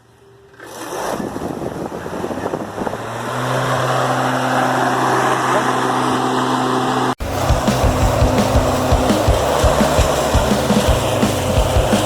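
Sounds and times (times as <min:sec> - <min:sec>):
electric lawn mower running: 0:06.0 - 0:12.0.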